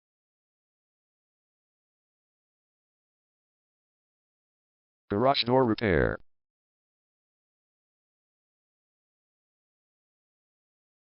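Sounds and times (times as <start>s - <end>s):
person speaking: 5.1s - 6.2s.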